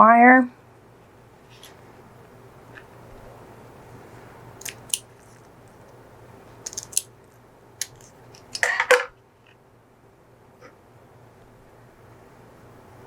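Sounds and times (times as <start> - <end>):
wire cutters snipping wire: 4.6 - 5.4, 6.6 - 7.1, 7.8 - 8.8.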